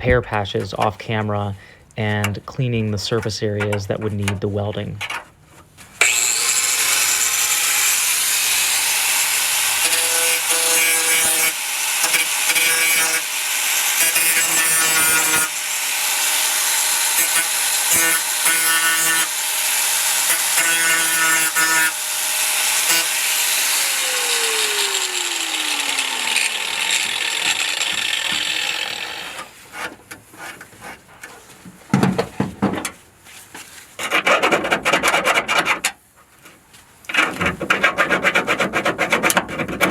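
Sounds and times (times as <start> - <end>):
angle grinder scraping metal: 6.0 - 30.6
grinder disc spinning down: 22.9 - 29.4
scrapes and knocks: 29.4 - 39.9.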